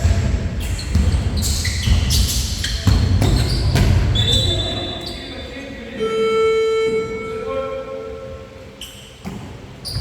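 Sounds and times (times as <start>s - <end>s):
basketballs bouncing on wooden floor: 0.0s - 4.6s.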